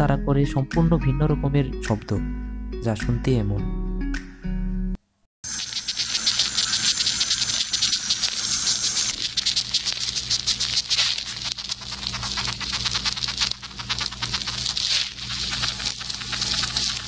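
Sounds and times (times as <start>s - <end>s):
ants stridulating: 5.5s - 17.0s.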